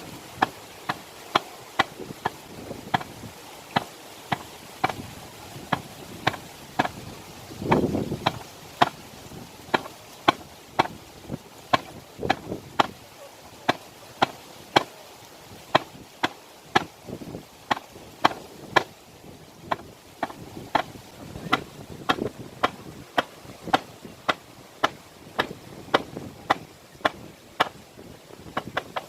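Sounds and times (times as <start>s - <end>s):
sharp short knocks: 3.7s - 5.0s, 5.7s - 7.0s, 7.7s - 9.0s, 9.7s - 11.0s, 11.7s - 13.0s, 15.7s - 16.9s, 17.7s - 18.9s, 19.6s - 27.8s.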